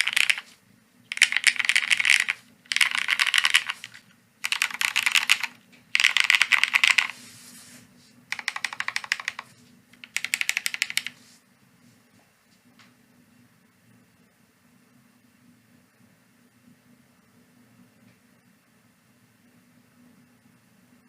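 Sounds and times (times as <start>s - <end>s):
mechanical keyboard typing: 0.0s - 0.5s, 1.1s - 7.2s, 8.3s - 11.2s.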